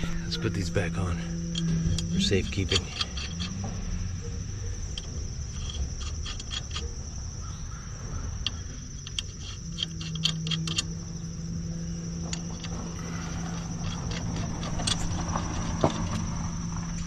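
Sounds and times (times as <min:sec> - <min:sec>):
insect chirring: 0:00.0 - 0:17.0
low steady hum: 0:00.0 - 0:17.0
lug nuts clicking on studs: 0:01.5 - 0:07.6, 0:08.3 - 0:11.3, 0:12.2 - 0:17.0.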